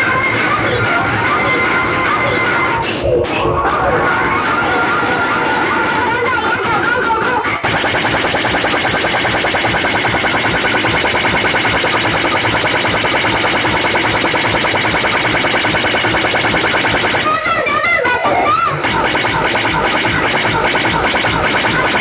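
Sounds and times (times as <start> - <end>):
pulsing electronic buzz: 7.6 - 17.4, 18.8 - 22.0.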